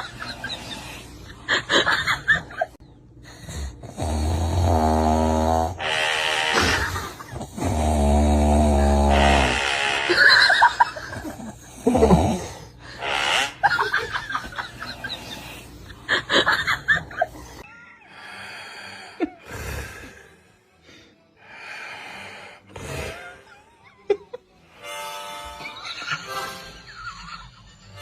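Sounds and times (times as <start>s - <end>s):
person snoring: 3.4s - 5.9s, 6.5s - 9.8s, 11.7s - 13.1s.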